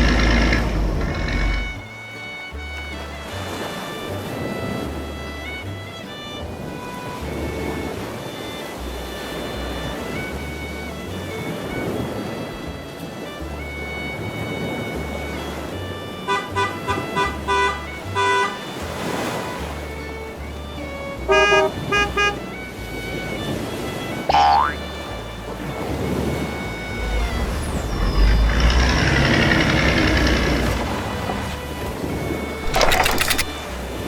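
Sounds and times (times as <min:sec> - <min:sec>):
rapid mechanical rattle: 0:00.0 - 0:01.8, 0:26.9 - 0:31.1, 0:32.6 - 0:33.7
cartoon horn toots: 0:21.3 - 0:22.4, 0:24.3 - 0:24.9.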